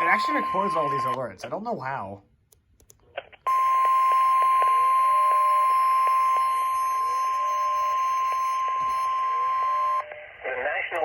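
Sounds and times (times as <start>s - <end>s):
weather radio alarm tone: 0.0s - 1.2s, 3.5s - 10.0s.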